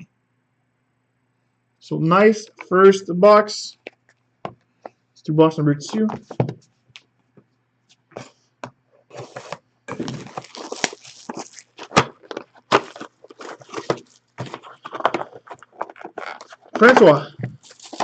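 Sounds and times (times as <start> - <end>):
cardboard pack rustling and clicks: 9.1 - 18.0
plastic wrap crinkling and tearing: 9.2 - 18.0.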